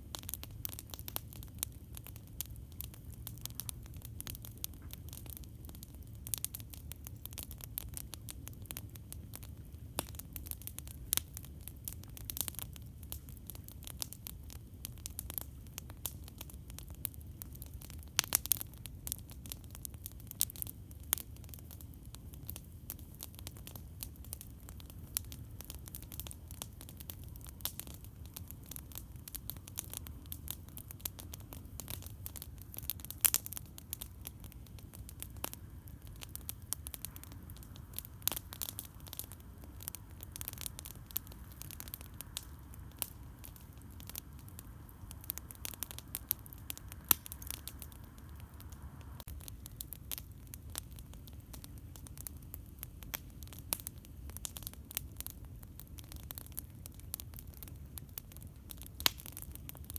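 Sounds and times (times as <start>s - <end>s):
campfire crackling: 0.0s - 59.9s.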